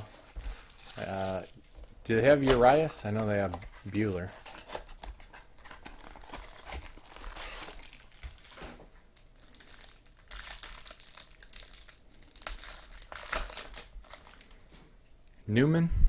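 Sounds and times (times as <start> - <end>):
wrapper crinkling and tearing: 0.0 - 1.8, 4.2 - 14.7.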